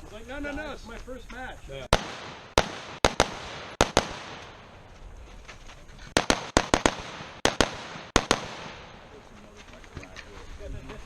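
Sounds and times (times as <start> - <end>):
rifle shots: 1.9 - 4.9, 6.1 - 9.2.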